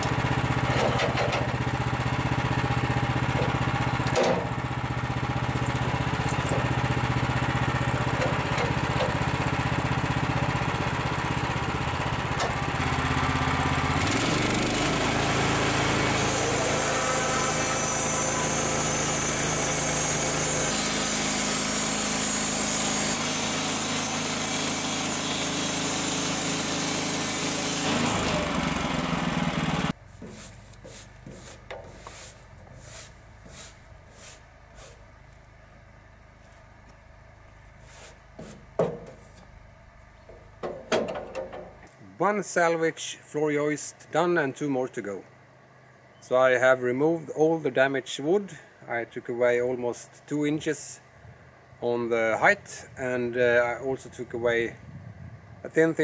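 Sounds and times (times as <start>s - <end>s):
bandsaw mill cutting wood: 0.0s - 35.1s.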